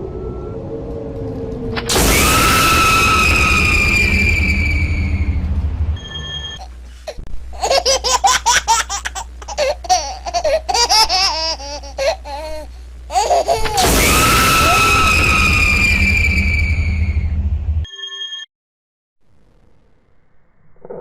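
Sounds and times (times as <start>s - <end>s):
loud hiss with high whine: 1.8s - 6.6s, 13.8s - 17.2s
high-pitched wavering laughter: 7.6s - 13.9s.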